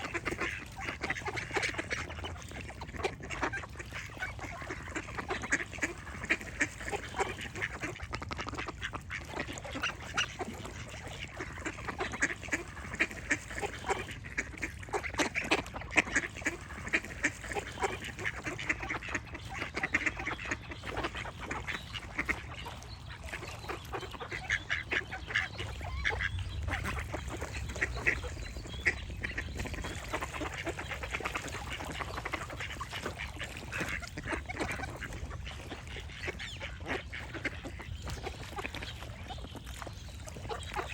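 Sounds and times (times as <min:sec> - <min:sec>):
ducks quacking: 0:00.0 - 0:40.9
low steady rumble: 0:25.6 - 0:30.9.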